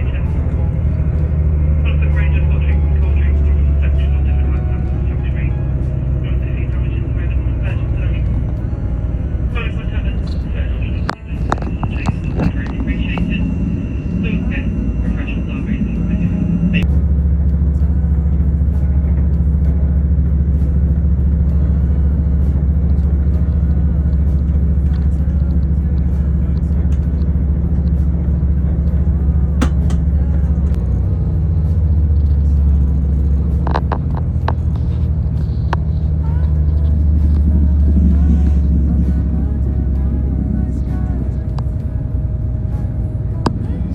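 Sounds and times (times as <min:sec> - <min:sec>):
train rumbling: 0:00.0 - 0:43.9
sharp clicks and knocks: 0:29.6 - 0:30.1.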